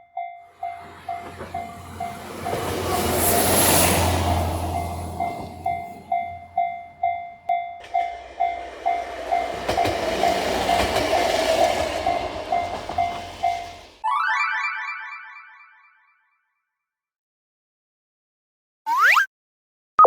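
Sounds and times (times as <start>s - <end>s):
level-crossing alarm dinging: 0.0s - 14.1s
train passing: 0.4s - 14.0s.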